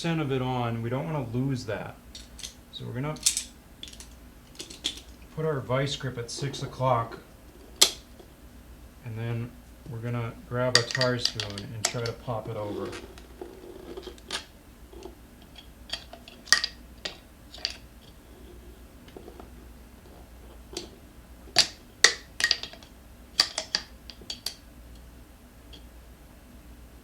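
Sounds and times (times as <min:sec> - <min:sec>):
metal tools clinking on wheel rim: 0:02.1 - 0:05.2, 0:10.7 - 0:14.5.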